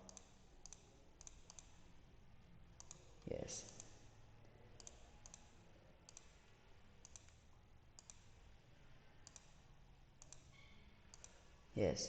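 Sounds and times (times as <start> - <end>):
computer mouse clicks: 0.0 - 1.8, 2.8 - 4.0, 4.8 - 6.4, 7.0 - 7.4, 8.0 - 8.3, 9.2 - 9.6, 10.2 - 11.4
low room hum: 0.0 - 12.0.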